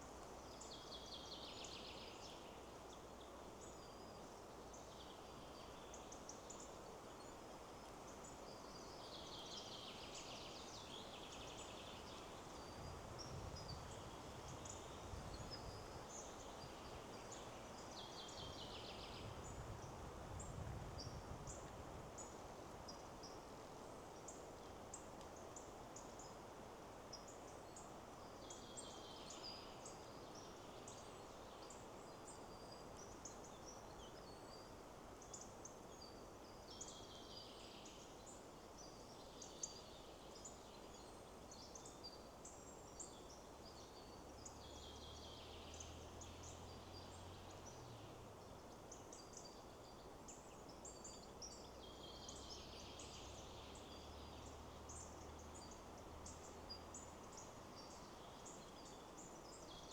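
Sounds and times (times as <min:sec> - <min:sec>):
small birds chirping: 0:00.0 - 0:59.9
wind in trees: 0:00.0 - 0:59.9
bird singing: 0:27.1 - 0:59.9.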